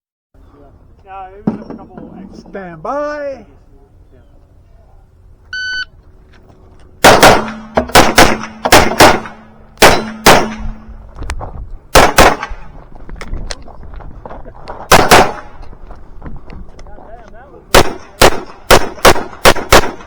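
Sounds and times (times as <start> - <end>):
pistol shots: 7.0 - 10.9, 11.9 - 12.7, 14.9 - 15.6, 17.7 - 20.0.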